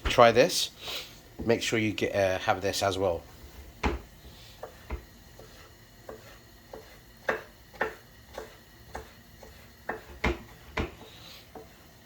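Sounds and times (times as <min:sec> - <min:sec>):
knife chopping on wooden board: 0:03.8 - 0:11.8.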